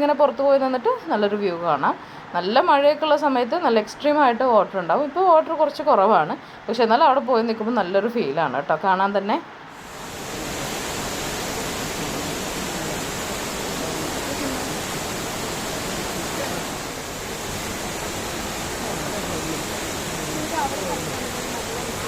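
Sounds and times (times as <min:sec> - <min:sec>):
waterfall rushing: 0:09.8 - 0:22.0.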